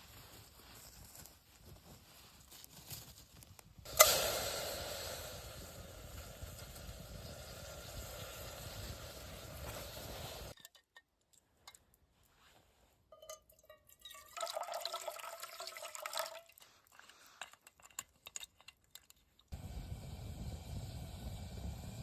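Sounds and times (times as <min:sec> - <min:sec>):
liquid pouring with ringing tone: 0:13.2 - 0:16.5
liquid dripping: 0:13.3 - 0:19.5.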